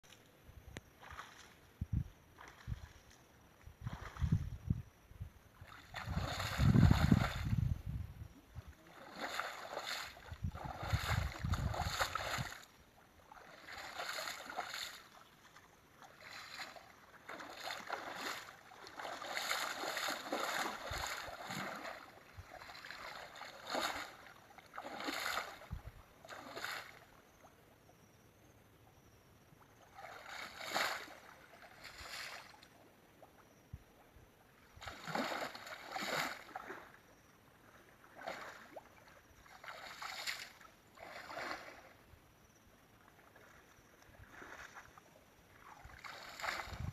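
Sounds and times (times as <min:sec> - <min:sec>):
water splashing and sloshing: 0:00.1 - 0:27.7, 0:29.5 - 0:46.9.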